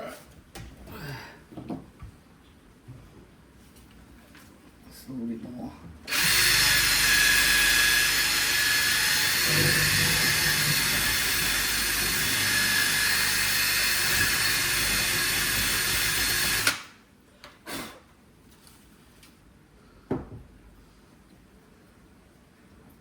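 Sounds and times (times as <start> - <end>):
power drill boring: 6.1 - 16.8.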